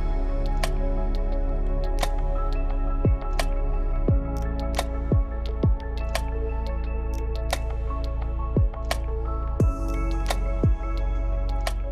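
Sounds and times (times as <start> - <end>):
deep booms dropping in pitch: 3.0 - 3.4, 4.1 - 4.4, 5.1 - 6.1, 9.6 - 11.0.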